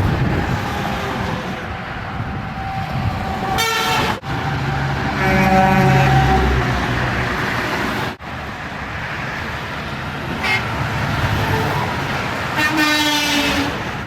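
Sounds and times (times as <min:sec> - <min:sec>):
highway traffic rushing past: 0:00.0 - 0:14.0
truck horn: 0:03.6 - 0:04.2, 0:05.1 - 0:06.8, 0:10.3 - 0:10.8, 0:12.5 - 0:13.9.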